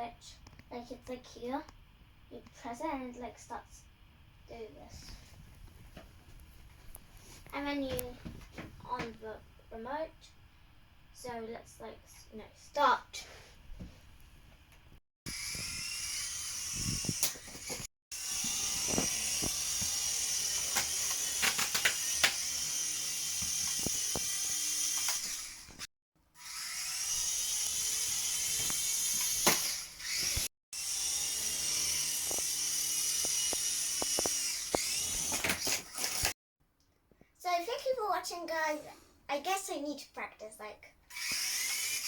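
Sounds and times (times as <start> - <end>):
toy helicopter motors whining: 15.3 - 36.4, 41.1 - 42.0.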